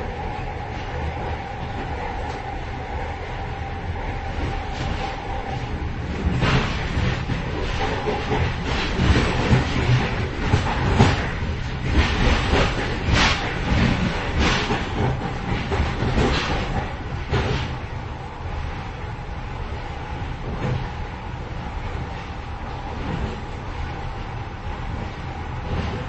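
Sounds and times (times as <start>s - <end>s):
train clatter and knocks: 0.0s - 26.0s
train rumble: 0.0s - 26.0s.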